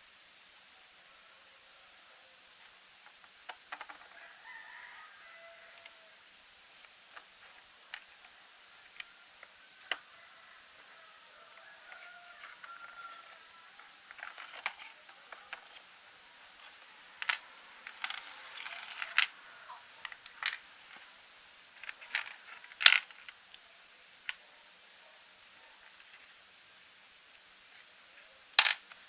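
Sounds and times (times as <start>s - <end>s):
plastic toy bricks clicking: 14.1s - 15.8s, 17.2s - 19.3s, 20.0s - 20.6s, 21.8s - 23.4s, 28.6s - 29.0s.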